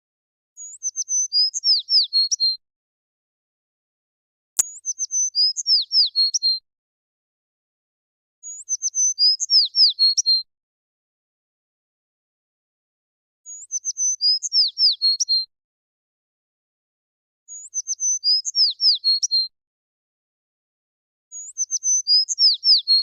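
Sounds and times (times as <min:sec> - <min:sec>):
sparrow singing: 0:21.5 - 0:23.0.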